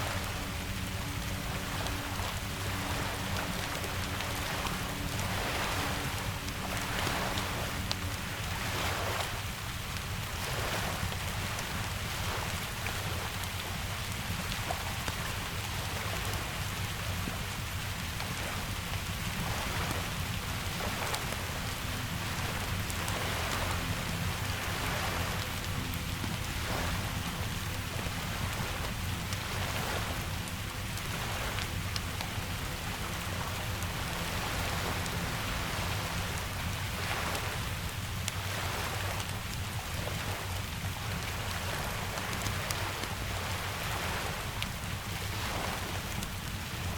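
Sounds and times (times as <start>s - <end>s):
steady rain falling: 0.0s - 46.9s.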